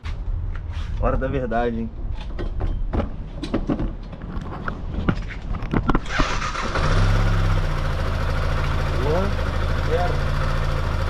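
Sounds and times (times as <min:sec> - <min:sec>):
clicks and knocks: 0:02.2 - 0:06.2
motorcycle engine starting and idling: 0:05.8 - 0:11.0.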